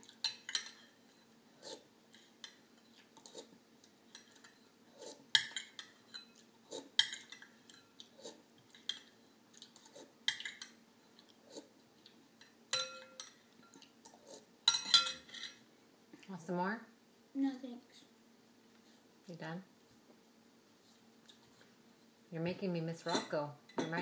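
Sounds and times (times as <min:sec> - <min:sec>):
spoon clinking against bowl: 0:12.7 - 0:13.8.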